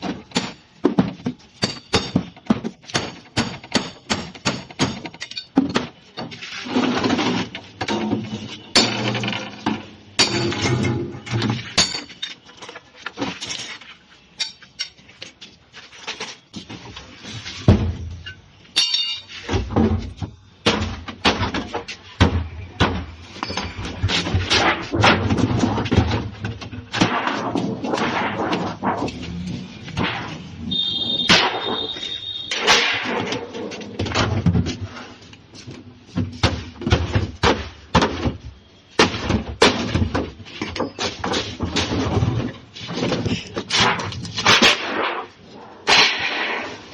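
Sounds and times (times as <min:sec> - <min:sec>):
metal knocks and clanks: 0:00.0 - 0:13.8
ringing metal clang: 0:10.2 - 0:11.0, 0:18.2 - 0:19.3.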